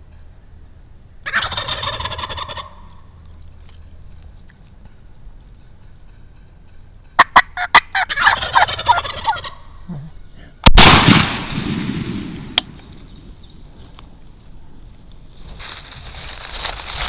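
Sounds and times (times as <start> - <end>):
turkey gobbling: 1.2 - 3.2, 7.2 - 11.1
shotgun blast: 10.6 - 13.4.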